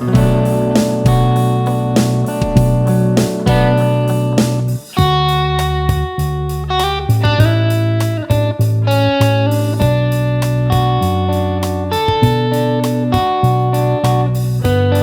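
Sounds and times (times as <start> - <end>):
steady drum beat: 0.0 - 11.1
bass line: 0.0 - 15.0
guitar-led song: 0.0 - 15.0.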